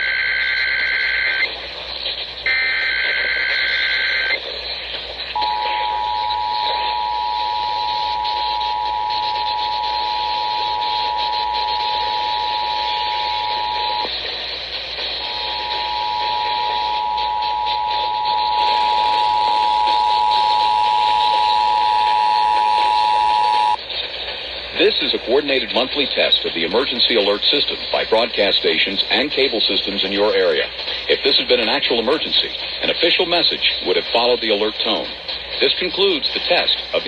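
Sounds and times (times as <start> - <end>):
radio receiver hiss: 0.0 - 37.0
two-tone alert signal: 5.4 - 14.0.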